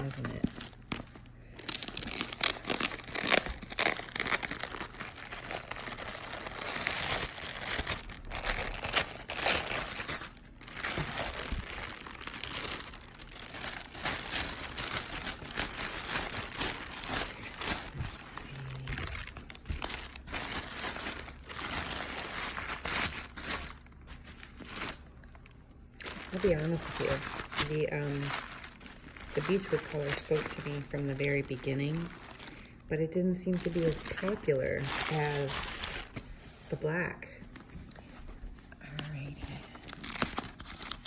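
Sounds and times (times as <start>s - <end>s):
crinkly packaging rustling: 0.0s - 41.0s.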